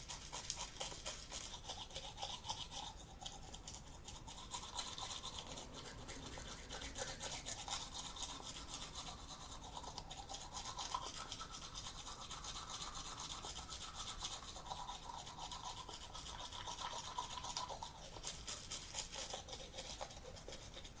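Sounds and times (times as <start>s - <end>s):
toothbrush scrubbing teeth: 0.0s - 21.0s.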